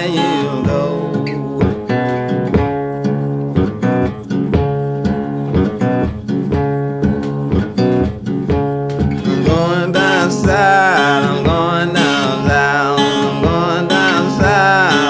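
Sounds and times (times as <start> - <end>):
person singing: 0.0 - 2.0, 9.2 - 15.0
acoustic blues guitar picking: 0.0 - 15.0.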